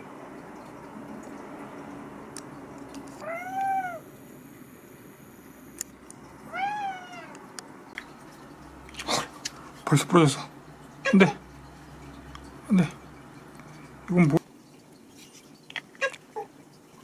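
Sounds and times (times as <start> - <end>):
cat meowing: 3.2 - 4.1, 6.5 - 7.4.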